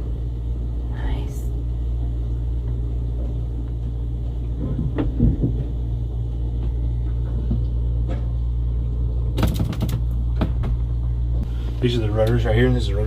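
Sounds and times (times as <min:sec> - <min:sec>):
boat engine drone: 0:00.0 - 0:13.0
knocks: 0:04.6 - 0:05.8.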